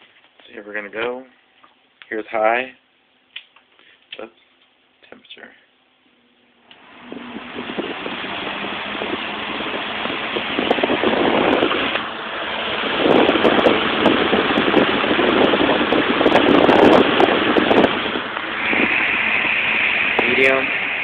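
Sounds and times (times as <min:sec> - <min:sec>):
box fan blowing air: 0:06.6 - 0:21.0.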